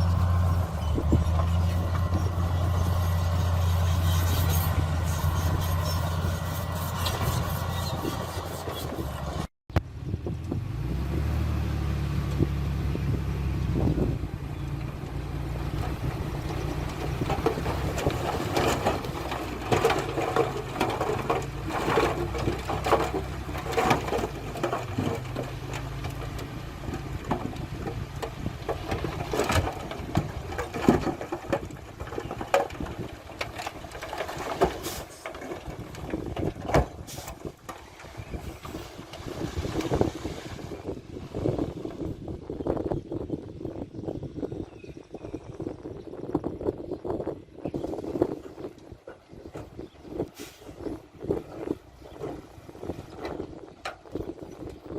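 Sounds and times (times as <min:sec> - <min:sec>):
diesel engine drone: 0:00.0 - 0:42.4
metallic clanks and knocks: 0:15.7 - 0:38.2.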